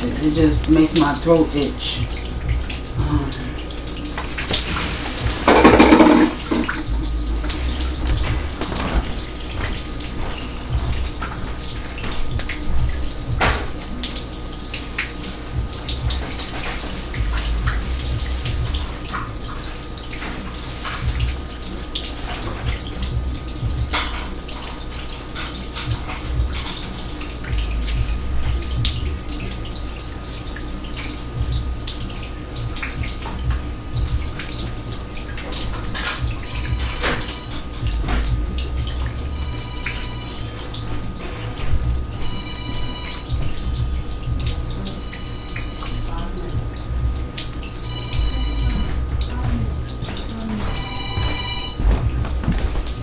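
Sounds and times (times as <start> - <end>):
sink water running and splashing: 0.0 - 53.0
water dripping: 0.0 - 53.0.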